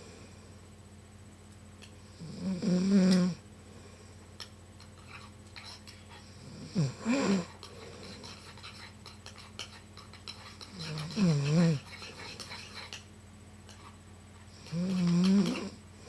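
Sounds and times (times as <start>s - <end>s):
woman snoring loudly: 2.2s - 3.4s, 6.4s - 7.5s, 10.8s - 11.8s, 14.7s - 15.8s.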